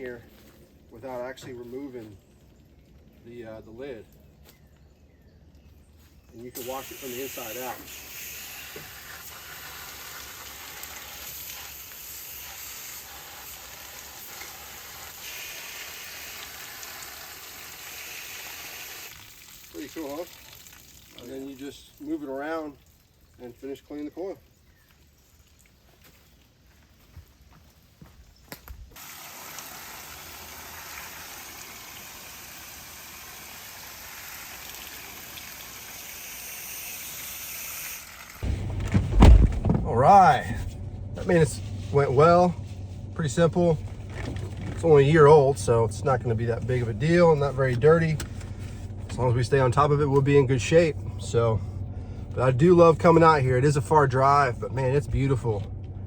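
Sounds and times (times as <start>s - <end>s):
water spraying from a hose: 6.5s - 26.5s, 29.0s - 38.5s.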